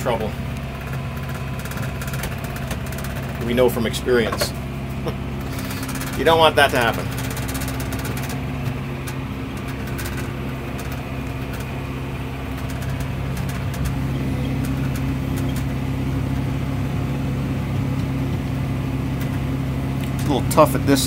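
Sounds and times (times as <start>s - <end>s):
light clicks and rattles: 0.0s - 4.6s, 5.4s - 16.5s
round baler working: 0.0s - 21.0s
tractor engine running under load: 0.0s - 21.0s.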